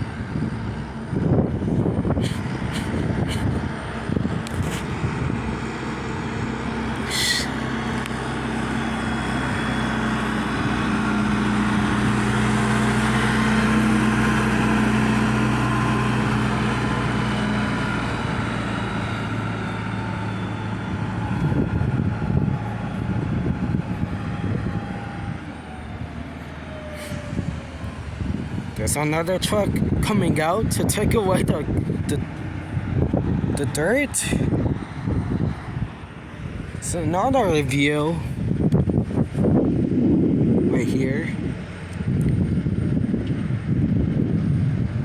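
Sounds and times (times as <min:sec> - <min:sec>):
truck diesel engine passing: 0:00.0 - 0:45.0
brief high squeal: 0:07.1 - 0:07.6.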